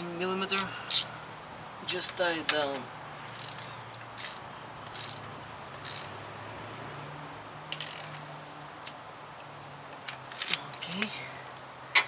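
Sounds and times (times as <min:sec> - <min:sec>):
socket ratchet clicking: 0:03.4 - 0:05.2, 0:05.8 - 0:06.1, 0:07.7 - 0:08.2.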